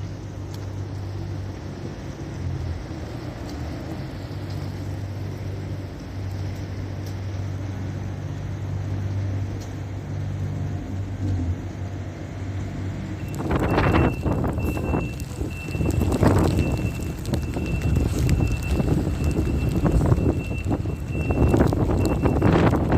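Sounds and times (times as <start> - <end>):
vehicle engine rumbling: 0.0 - 22.9
wind noise: 13.1 - 22.9.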